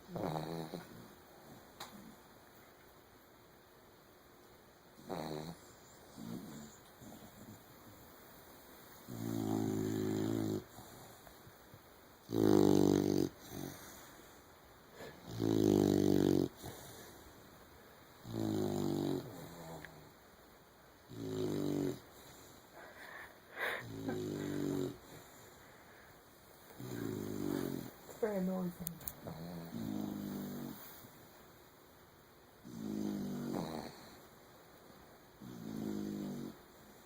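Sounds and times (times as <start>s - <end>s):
puppy snoring: 0.0s - 2.3s, 5.0s - 8.0s, 8.9s - 11.4s, 12.2s - 17.4s, 18.2s - 20.2s, 21.0s - 31.2s, 32.6s - 34.4s, 35.4s - 37.0s.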